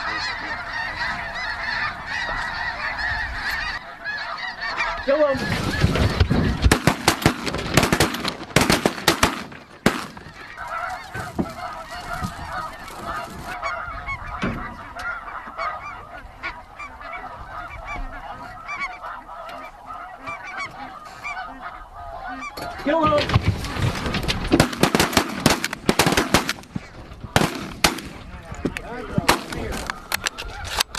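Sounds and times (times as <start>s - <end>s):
geese honking: 0.0s - 30.9s
shotgun shots: 6.6s - 10.3s, 24.5s - 28.3s.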